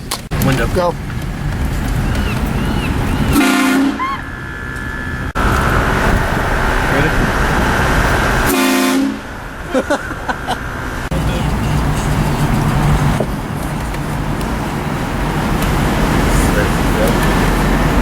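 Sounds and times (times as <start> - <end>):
loud air train horn blasts: 3.3 - 5.3, 8.4 - 9.4.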